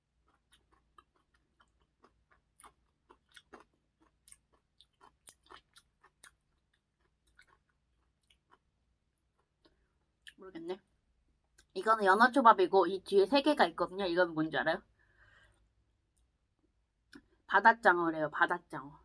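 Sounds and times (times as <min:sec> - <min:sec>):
close-up chewing: 0:00.0 - 0:10.4.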